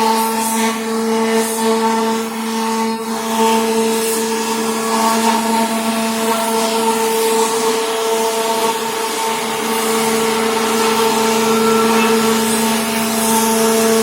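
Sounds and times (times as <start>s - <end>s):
cnc router spindle whine: 0.0s - 14.0s
rushing hiss of cutting: 3.3s - 14.0s.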